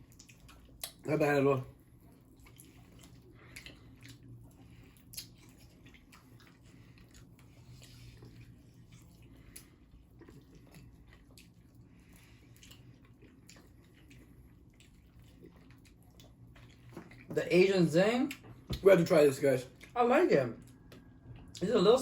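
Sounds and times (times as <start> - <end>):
chewing and biting chicken wings: 0.0 - 1.0, 1.7 - 17.3.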